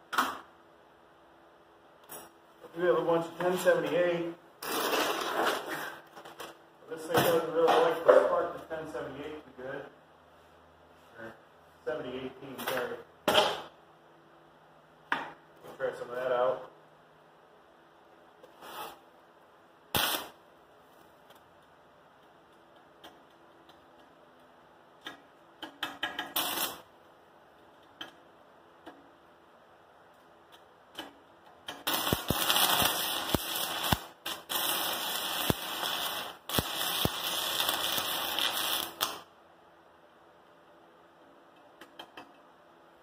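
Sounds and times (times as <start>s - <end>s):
welding arc crackling: 4.6s - 5.6s, 19.9s - 20.4s, 25.0s - 26.9s, 31.7s - 39.3s.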